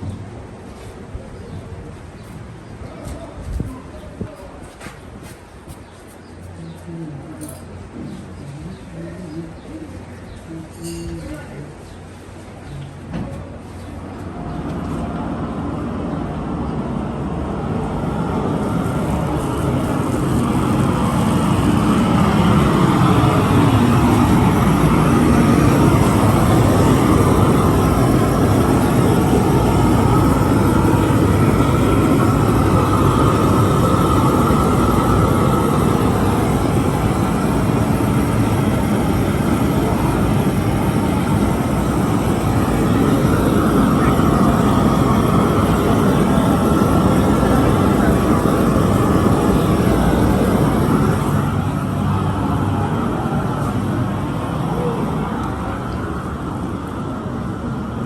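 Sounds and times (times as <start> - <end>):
loud motor-like drone: 14.3 - 58.0.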